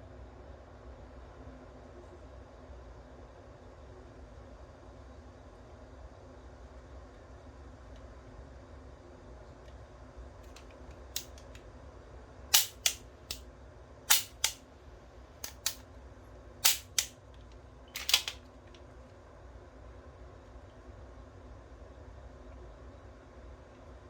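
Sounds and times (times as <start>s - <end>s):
toy pistol clicks: 11.2s - 11.6s, 12.6s - 13.4s, 14.1s - 14.6s, 15.4s - 15.8s, 16.6s - 17.2s, 18.0s - 18.4s.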